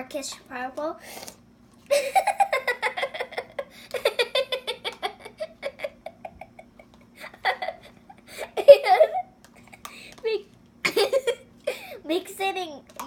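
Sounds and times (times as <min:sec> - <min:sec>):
child giggling: 0:01.9 - 0:09.8, 0:10.8 - 0:12.0.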